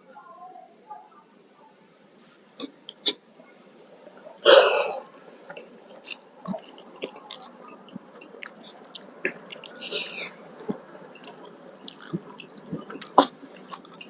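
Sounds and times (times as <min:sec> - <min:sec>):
wet chewing and mouth smacks: 0:04.8 - 0:14.0.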